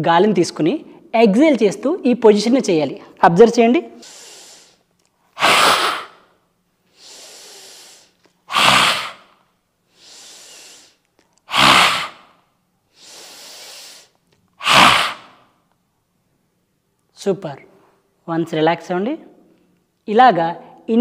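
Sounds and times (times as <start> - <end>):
soft inhale: 4.0 - 6.3, 6.9 - 12.3, 12.9 - 15.4
forceful exhalations through mouth: 4.0 - 15.6.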